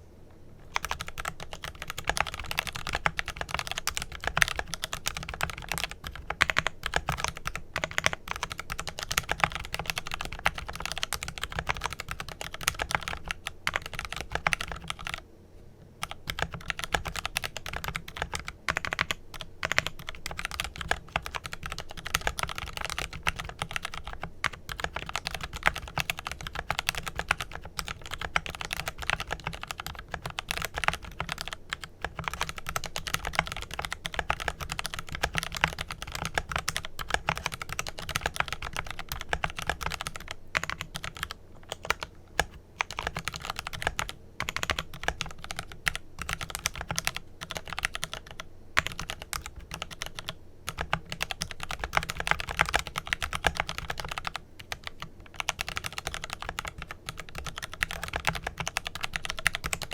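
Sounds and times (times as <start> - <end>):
mechanical keyboard typing: 0.7 - 15.2, 16.0 - 59.9.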